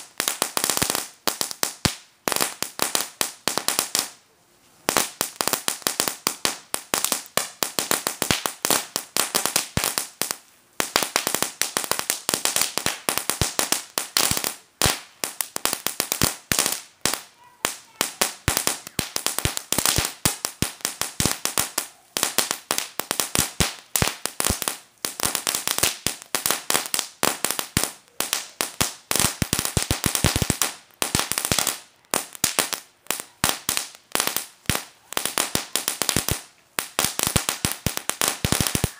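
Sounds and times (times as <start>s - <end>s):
firecracker bangs: 10.8s - 38.9s.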